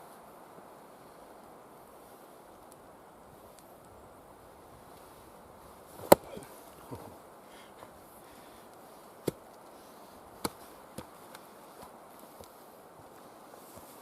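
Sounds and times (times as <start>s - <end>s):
axe chopping into a log: 6.0s - 7.1s, 10.4s - 11.1s.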